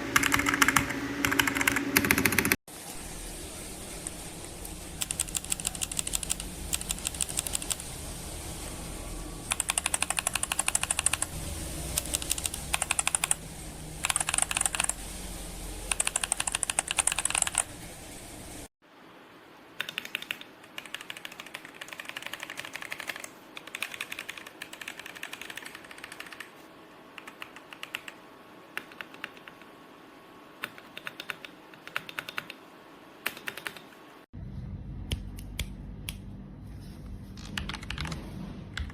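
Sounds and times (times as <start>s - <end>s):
mechanical keyboard typing: 0.1s - 2.6s, 5.0s - 8.0s, 9.5s - 11.3s, 11.9s - 13.4s, 14.0s - 15.0s, 15.9s - 17.7s, 19.8s - 26.5s, 27.2s - 29.7s, 30.6s - 32.6s, 33.2s - 34.0s, 37.4s - 38.2s.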